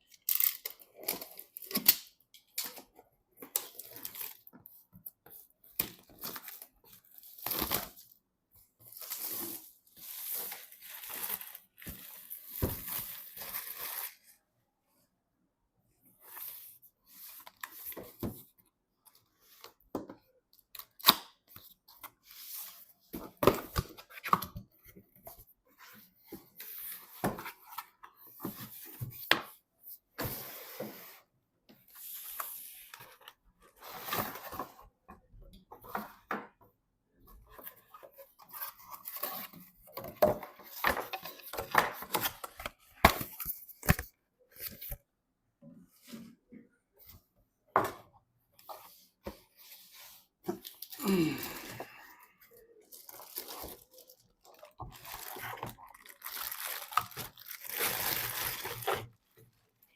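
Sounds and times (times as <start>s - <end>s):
packaging rustling and tearing: 52.9s - 59.2s.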